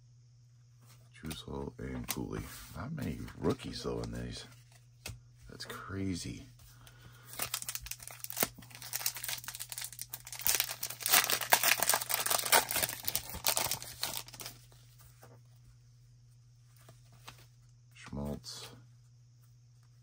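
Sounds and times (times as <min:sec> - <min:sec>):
wrapper being torn and crinkled: 0:07.3 - 0:14.6.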